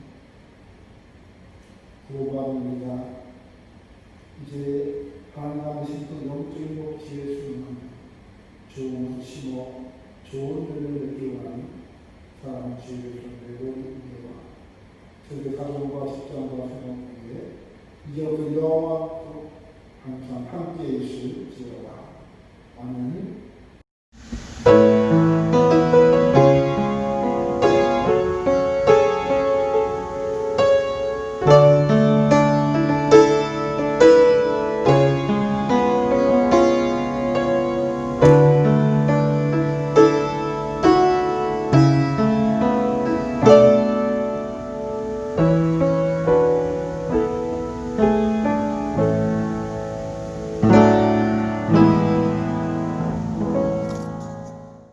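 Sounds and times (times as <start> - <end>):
piano sustained chords: 24.5 - 54.9.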